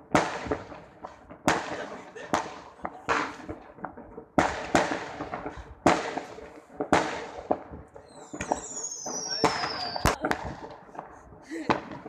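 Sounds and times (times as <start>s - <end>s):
fireworks bangs with hiss: 0.0s - 12.0s
small firework pops: 0.1s - 12.0s.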